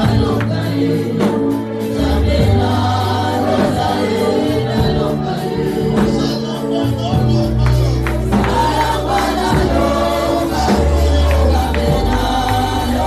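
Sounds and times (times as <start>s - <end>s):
drum beats: 0.0s - 13.0s
gospel choir singing: 0.0s - 13.0s.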